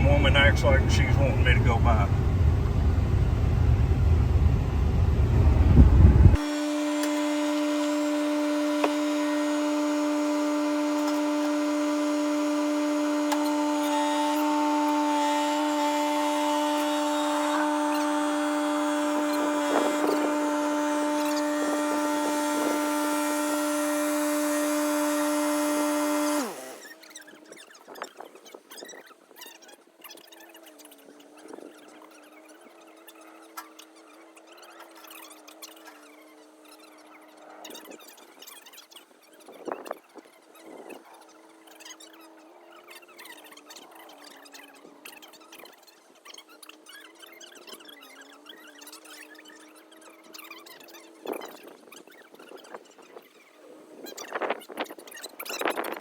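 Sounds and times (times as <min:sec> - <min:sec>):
tractor engine rumbling: 0:00.0 - 0:27.2
machine whine: 0:00.0 - 0:29.1.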